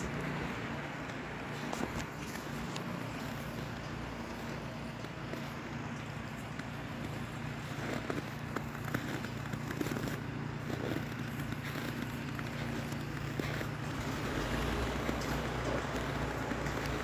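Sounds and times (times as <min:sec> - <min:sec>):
crackles and clicks: 0:00.0 - 0:17.0
low mechanical hum: 0:00.0 - 0:17.0.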